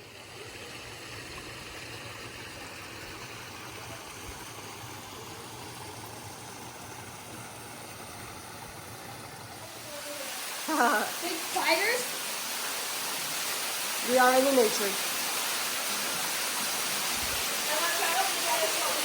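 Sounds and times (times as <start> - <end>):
rushing stream water: 0.0 - 19.0.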